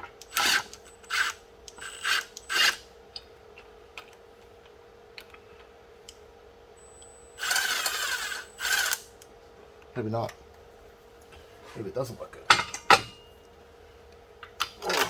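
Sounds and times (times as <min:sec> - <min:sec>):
power driver whirring: 0:00.2 - 0:02.9, 0:06.8 - 0:09.2.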